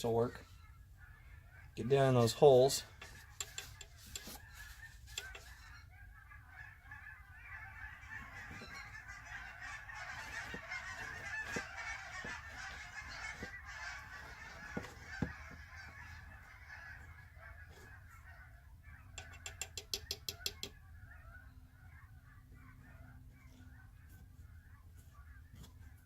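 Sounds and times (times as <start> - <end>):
geese honking: 0.0 - 26.0.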